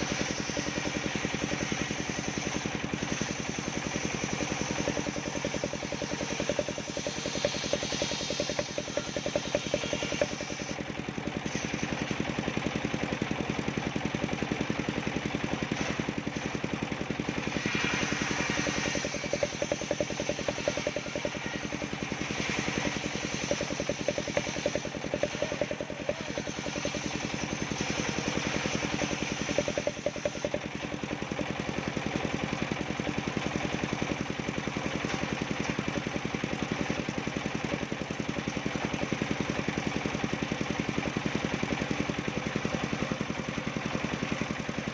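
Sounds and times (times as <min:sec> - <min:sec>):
saw blade cutting wood: 0:00.0 - 0:12.4, 0:14.7 - 0:32.0
circular saw engine running: 0:00.0 - 0:44.9.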